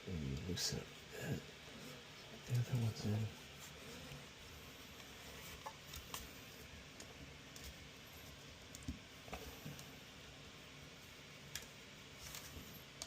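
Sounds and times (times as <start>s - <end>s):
small clicks and light taps: 8.6s - 9.9s, 11.4s - 13.0s.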